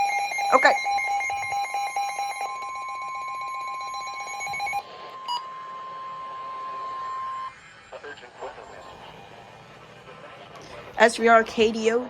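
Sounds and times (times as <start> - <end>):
electronic alarm beeping: 0.0 - 8.0
steady alarm tone: 0.0 - 12.0.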